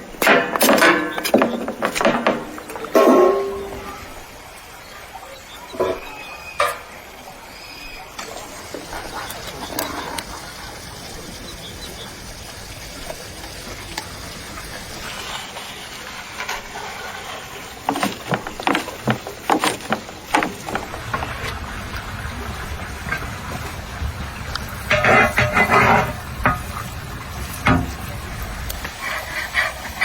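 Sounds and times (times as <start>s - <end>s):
sharp knocks: 17.9s - 21.3s, 27.6s - 28.1s.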